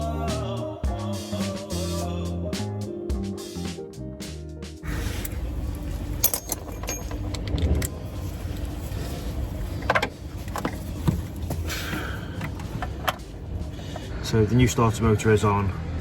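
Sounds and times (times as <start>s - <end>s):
steady low rumble: 0.0s - 16.0s
metallic clinks of hand tools: 6.2s - 7.4s.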